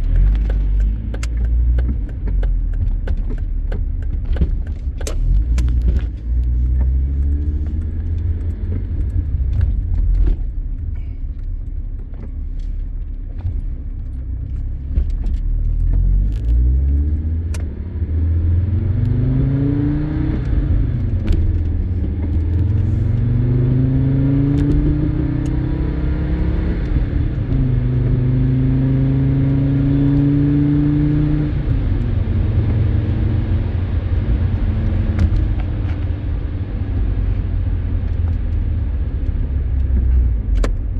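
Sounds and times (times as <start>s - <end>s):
car engine accelerating: 0.0s - 40.9s.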